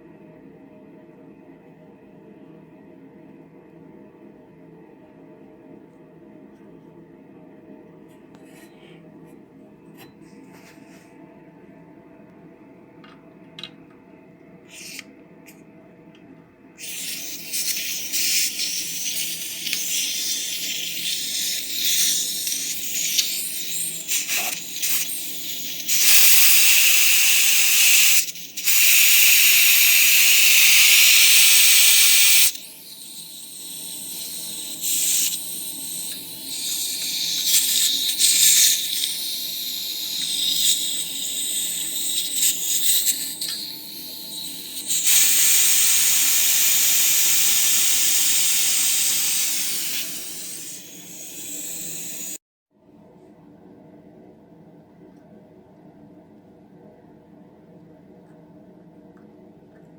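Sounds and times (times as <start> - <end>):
faint steady hum: 0.0 - 59.9
pressurized gas hissing: 16.8 - 52.4.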